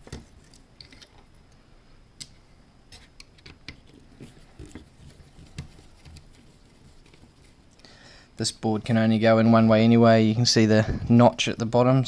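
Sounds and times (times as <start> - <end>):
handling of parts: 2.2 - 7.8.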